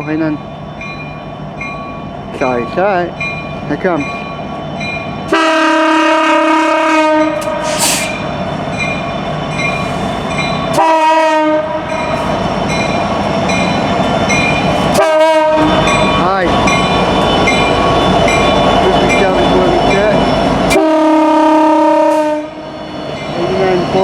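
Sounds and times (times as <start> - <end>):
crossing warning bells dinging: 0.0 - 24.0
train rumble: 0.0 - 24.0
locomotive air horn blasts: 5.3 - 8.1, 10.8 - 11.9, 14.9 - 15.8, 20.7 - 22.6.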